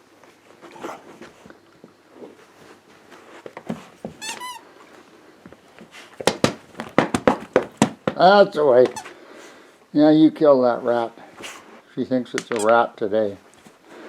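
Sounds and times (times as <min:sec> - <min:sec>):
squeaky toy squeaks: 0:04.2 - 0:04.6.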